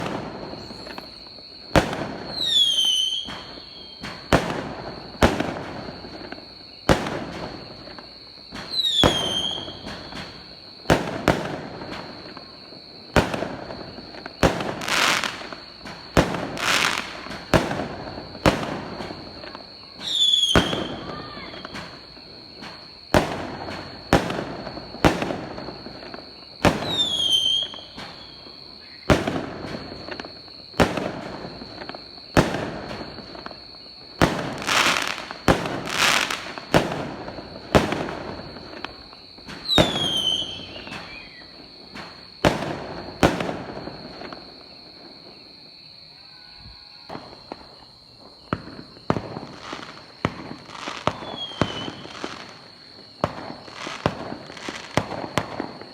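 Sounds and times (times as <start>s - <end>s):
fireworks crackles: 0.0s - 45.6s, 46.6s - 55.9s
fireworks bangs: 0.0s - 55.9s
falling whistle: 0.6s - 1.2s, 2.3s - 4.3s, 8.5s - 10.5s, 19.0s - 22.9s, 26.6s - 29.1s, 39.6s - 43.1s.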